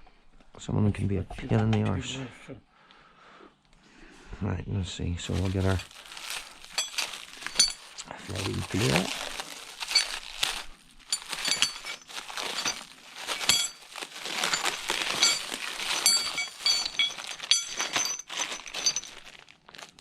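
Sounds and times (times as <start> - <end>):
metal tools clinking and rattling: 5.3 - 19.3.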